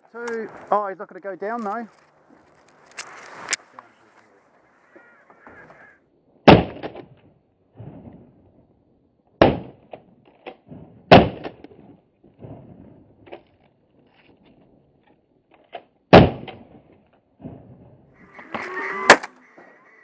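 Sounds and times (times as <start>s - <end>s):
shotgun shots: 6.4s - 7.1s, 9.4s - 9.9s, 10.6s - 11.6s, 16.1s - 16.7s.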